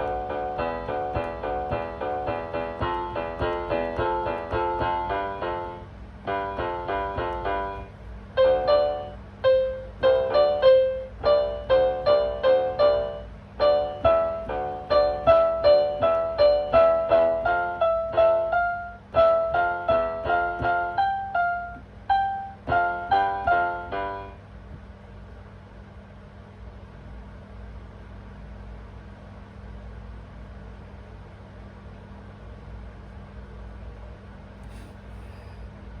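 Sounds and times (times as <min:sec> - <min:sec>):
piano notes over chords: 0:00.0 - 0:24.8.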